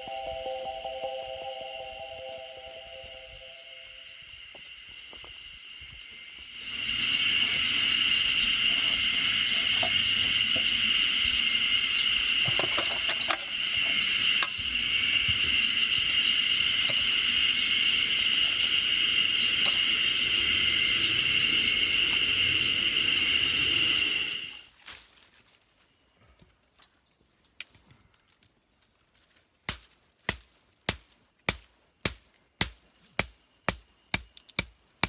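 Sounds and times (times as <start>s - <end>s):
high-pitched insect chorus: 0.0s - 24.6s.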